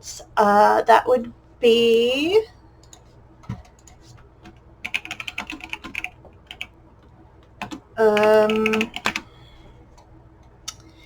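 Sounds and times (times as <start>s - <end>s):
keyboard typing clicks: 3.8s - 6.7s, 7.6s - 9.3s.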